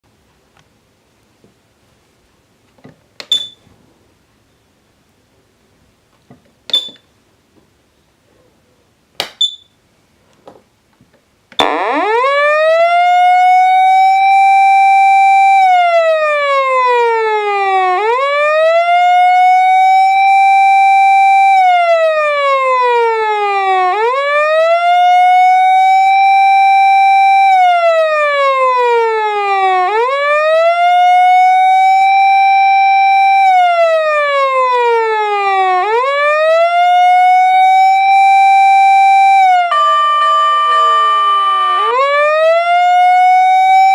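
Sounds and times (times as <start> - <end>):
electronic siren rising and falling: 11.6 - 43.9.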